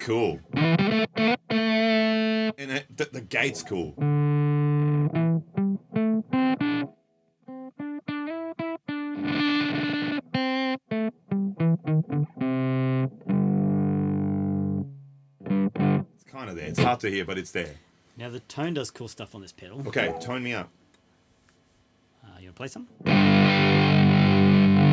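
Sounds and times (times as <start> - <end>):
fuzzed electric guitar notes: 0.0 - 2.6, 3.4 - 16.1, 23.0 - 24.9.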